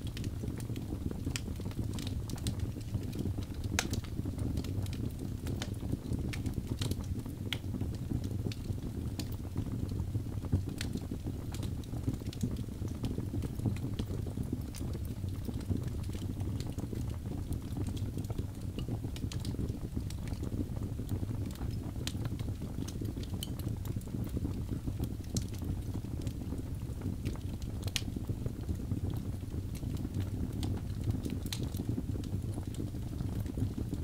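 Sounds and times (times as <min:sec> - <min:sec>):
fire crackling and popping: 0:00.0 - 0:34.0
fire rumbling: 0:00.0 - 0:34.0.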